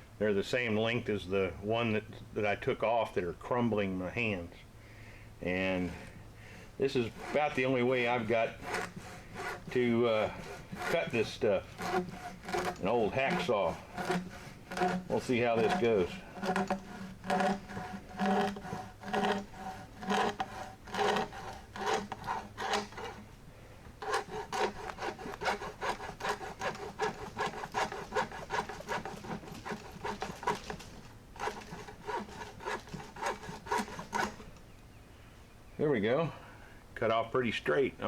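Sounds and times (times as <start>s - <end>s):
hacksaw cutting rubber hose: 6.8s - 23.3s, 24.0s - 34.6s.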